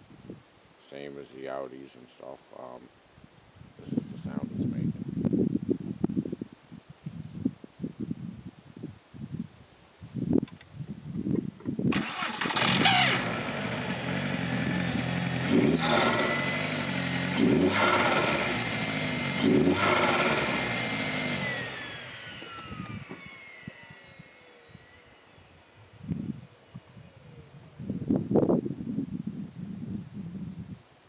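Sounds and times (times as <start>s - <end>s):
car engine revving rough: 12.0s - 23.9s.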